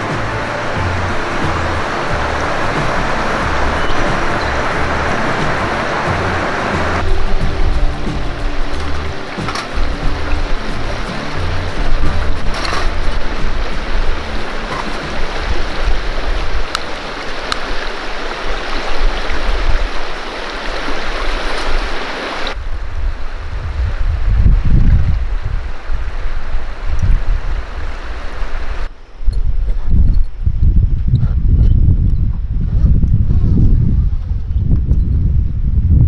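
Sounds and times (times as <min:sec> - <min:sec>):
river rushing over rocks: 0:00.0 - 0:22.6
gusty wind rumble: 0:00.0 - 0:36.0.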